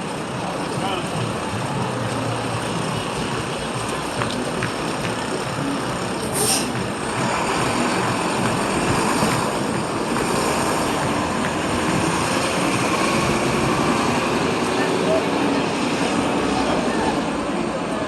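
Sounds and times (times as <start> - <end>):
city traffic: 0.0 - 18.0
short sharp hiss: 6.3 - 6.7.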